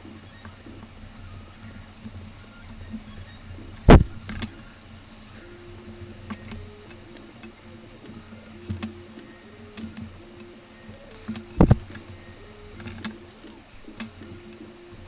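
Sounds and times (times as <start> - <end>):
loud thump: 3.9 - 4.2
clicks and taps of tools: 6.0 - 14.8.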